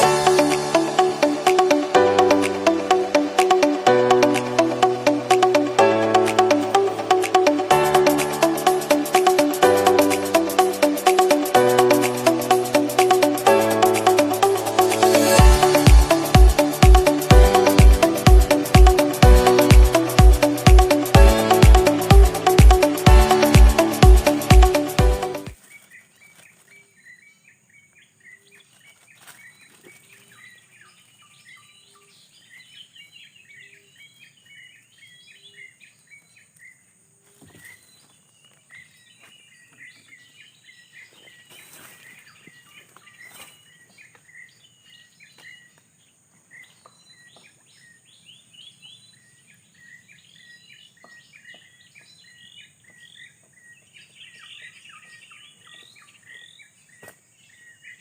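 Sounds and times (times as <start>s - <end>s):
high-pitched drone: 0.0s - 25.6s
small birds chirping: 25.6s - 58.0s.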